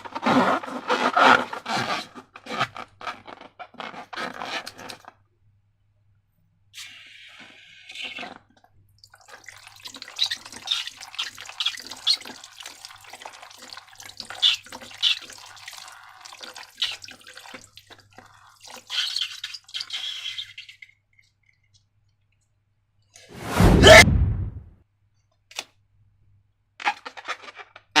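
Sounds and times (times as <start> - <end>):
loud thud: 23.4 - 24.7.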